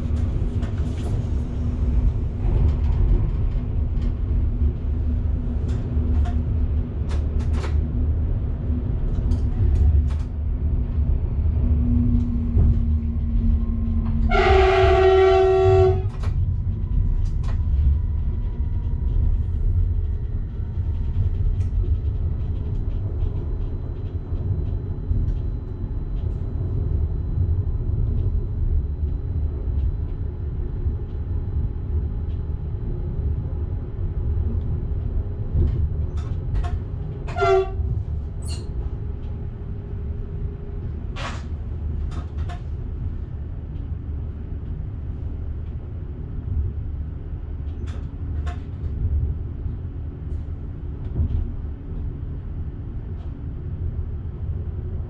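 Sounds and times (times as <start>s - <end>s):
train running rumble: 0.0s - 55.0s
train horn blast: 14.2s - 16.3s, 37.3s - 38.0s.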